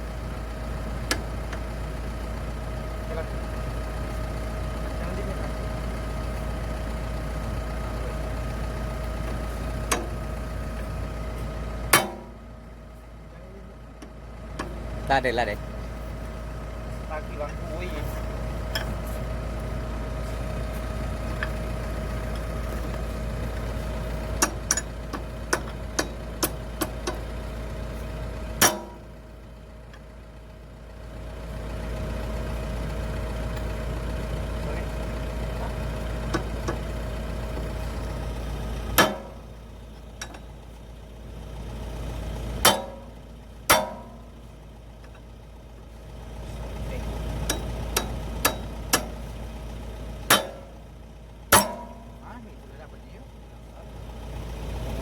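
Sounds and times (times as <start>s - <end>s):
excavator diesel engine idling: 0.0s - 55.0s.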